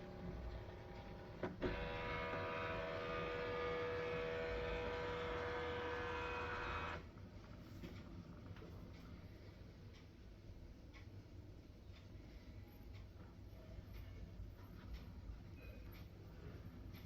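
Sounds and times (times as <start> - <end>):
printer motor whine: 0.0 - 7.1.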